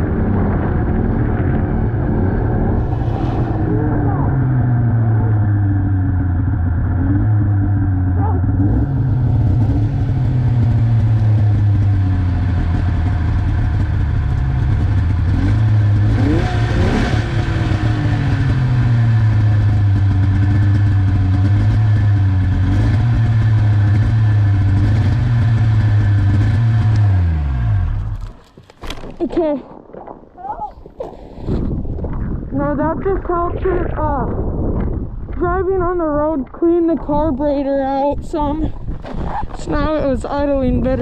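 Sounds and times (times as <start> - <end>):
snowmobile engine idling: 3.6 - 28.5.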